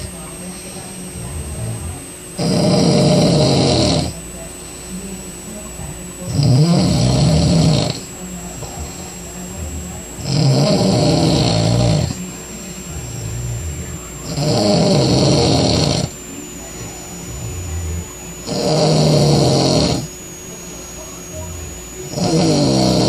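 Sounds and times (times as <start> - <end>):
quiet breathing: 0.0 - 2.1, 3.1 - 5.9, 7.0 - 23.0
man snoring loud: 1.2 - 4.2, 6.3 - 8.0, 8.6 - 12.2, 12.9 - 16.1, 16.8 - 20.1, 21.4 - 23.0.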